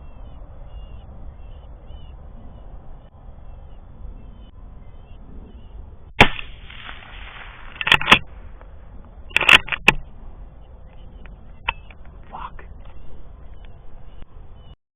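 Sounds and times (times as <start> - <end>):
gunshots echoing: 6.2 - 8.2.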